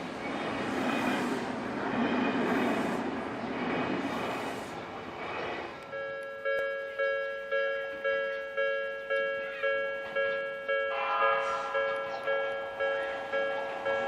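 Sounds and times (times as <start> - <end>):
train passing: 0.0 - 14.0
level crossing bell ringing: 5.9 - 14.0.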